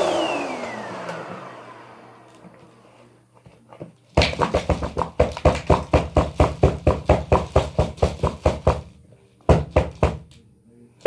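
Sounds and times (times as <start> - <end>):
rapid even knocking: 4.2 - 8.8.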